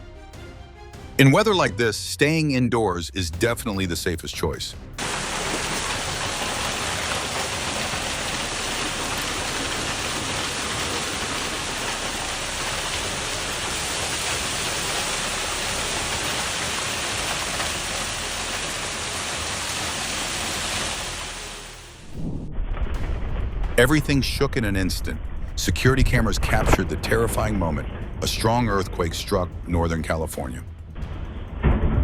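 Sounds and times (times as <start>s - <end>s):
heavy rain pouring: 5.0s - 23.1s.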